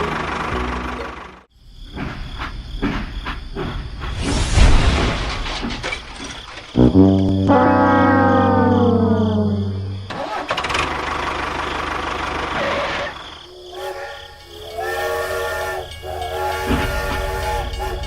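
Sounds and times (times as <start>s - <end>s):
whistle-like horn blasts: 6.8s - 10.1s, 13.5s - 18.0s
falling horn-like slide: 6.8s - 10.4s, 13.5s - 18.0s.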